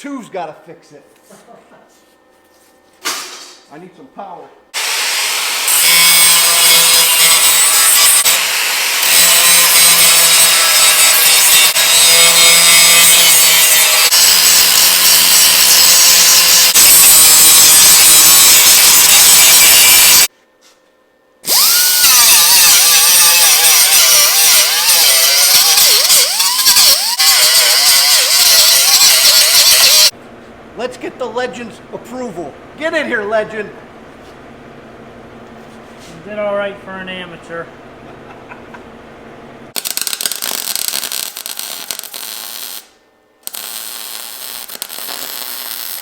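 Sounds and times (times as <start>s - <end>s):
power grinder grinding steel: 4.8s - 20.3s, 21.5s - 30.1s, 43.5s - 46.0s.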